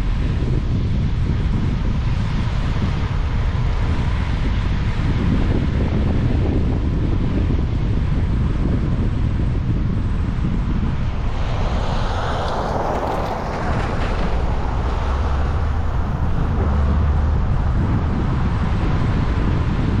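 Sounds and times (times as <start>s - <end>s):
wind buffeting microphone: 0.0s - 20.0s
vehicle passing by: 10.5s - 20.0s.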